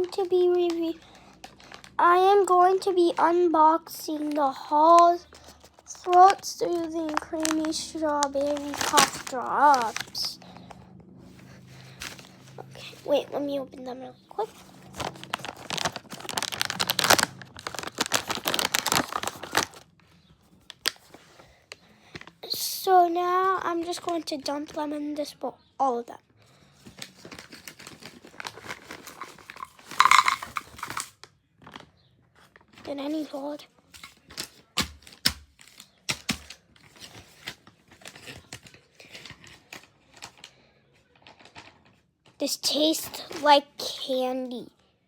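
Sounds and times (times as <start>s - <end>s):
plastic bag crinkling and tearing: 0.0s - 3.1s, 4.2s - 10.8s, 11.4s - 13.1s, 14.4s - 20.0s, 20.6s - 22.4s, 26.8s - 33.3s, 34.0s - 40.6s.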